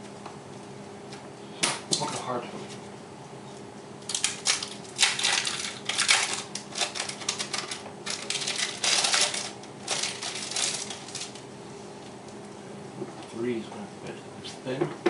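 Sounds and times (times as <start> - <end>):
plastic packaging crinkling: 4.1 - 11.4.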